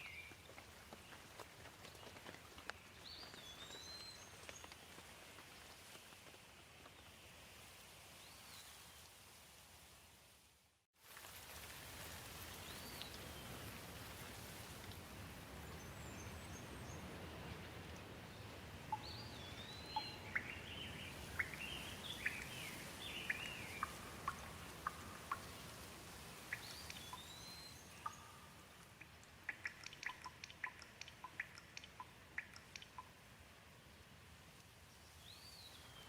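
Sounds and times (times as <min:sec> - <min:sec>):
soft steady rain: 0:00.0 - 0:36.0
water dripping: 0:11.2 - 0:15.1, 0:18.8 - 0:33.3.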